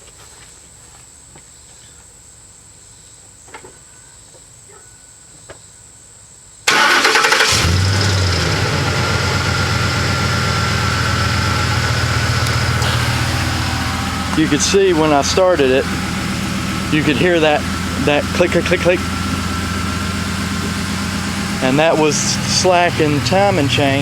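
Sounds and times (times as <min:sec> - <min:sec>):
engine starting and idling: 0:06.7 - 0:24.0.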